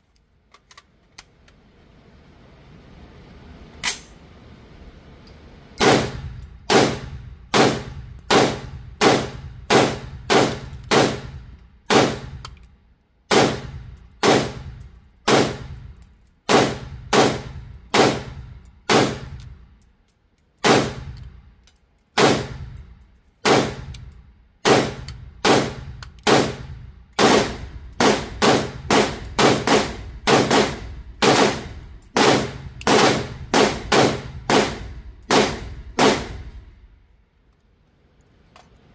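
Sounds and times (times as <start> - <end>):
gunshots: 5.8 - 12.4, 13.3 - 14.7, 15.3 - 15.8, 16.5 - 19.4, 20.6 - 21.1, 22.2 - 22.8, 23.4 - 23.9, 24.6 - 36.6.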